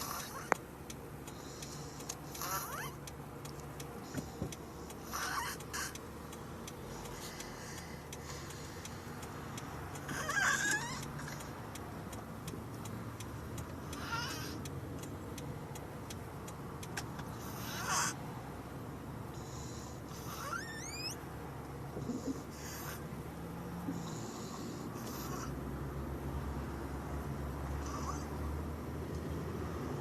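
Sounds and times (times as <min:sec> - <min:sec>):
whistling snoring: 0:00.0 - 0:00.5, 0:02.3 - 0:03.0, 0:05.0 - 0:05.9, 0:10.0 - 0:11.4, 0:13.9 - 0:14.6, 0:19.4 - 0:21.2, 0:27.8 - 0:28.4
faint regular ticking: 0:00.0 - 0:30.0.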